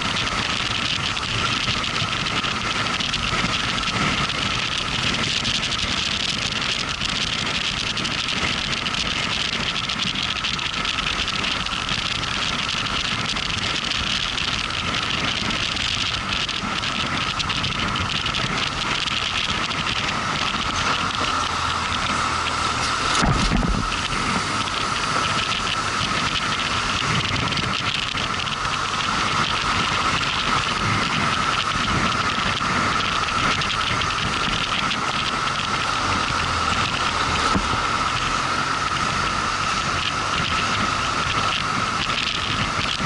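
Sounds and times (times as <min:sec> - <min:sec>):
high whine: 0:00.0 - 0:43.0
motorcycle engine rumble: 0:00.0 - 0:43.0
wind rush and road noise: 0:00.0 - 0:43.0
low thump: 0:23.2 - 0:23.9.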